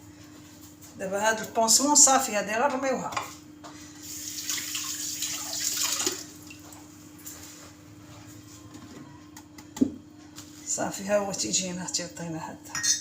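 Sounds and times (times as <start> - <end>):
liquid trickling and splashing: 4.0 - 6.9.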